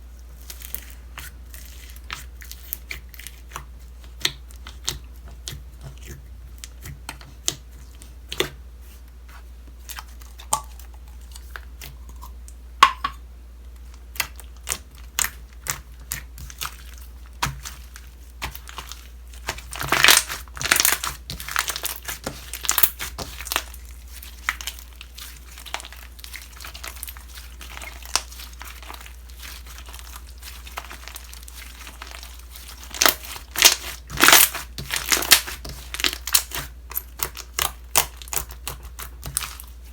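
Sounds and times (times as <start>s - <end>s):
slime squished by hand: 14.1s - 39.9s.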